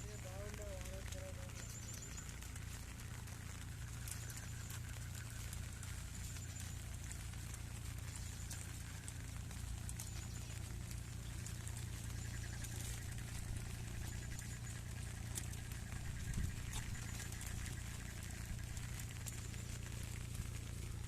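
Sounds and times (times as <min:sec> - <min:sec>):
low rumble: 0:00.0 - 0:21.0
raindrops pattering: 0:00.0 - 0:21.0.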